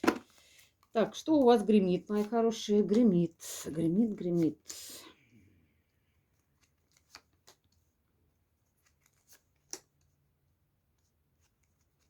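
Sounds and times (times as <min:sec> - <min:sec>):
cards being shuffled: 0:01.5 - 0:03.2, 0:06.3 - 0:07.8, 0:08.6 - 0:10.1.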